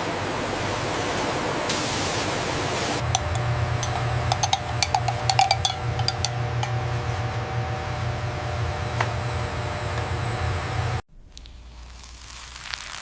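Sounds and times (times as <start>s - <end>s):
machinery low hum: 3.0s - 11.0s.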